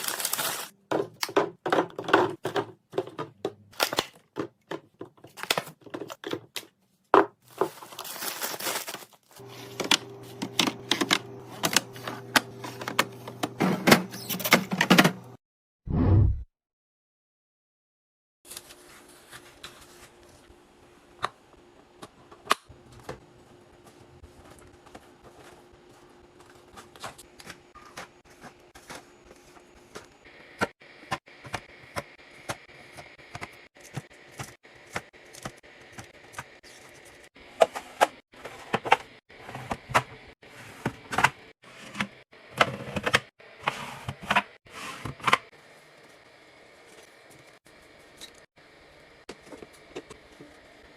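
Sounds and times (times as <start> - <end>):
containers and bottles clicking and knocking: 0.9 - 7.3.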